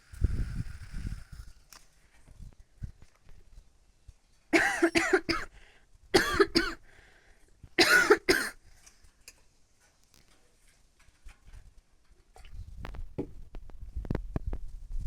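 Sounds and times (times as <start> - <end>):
woman coughing: 4.6 - 5.5, 6.2 - 6.8, 7.8 - 8.6.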